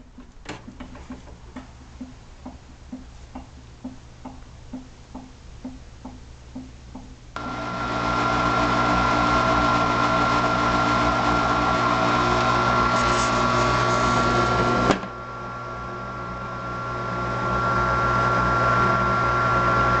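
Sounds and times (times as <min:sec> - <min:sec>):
milling machine motor whine: 0:07.4 - 0:20.0.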